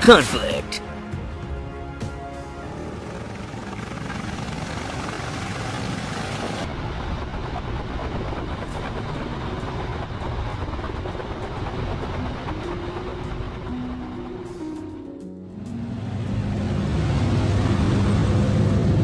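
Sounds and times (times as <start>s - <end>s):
dense engine rumble: 2.8s - 19.0s.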